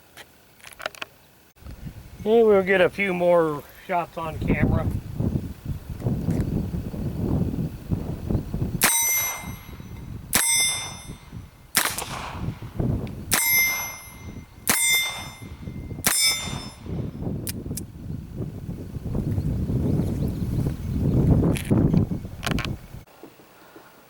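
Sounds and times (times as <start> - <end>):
metallic target ding: 8.8 - 11.4, 13.3 - 16.9
revolver shots: 11.8 - 14.1.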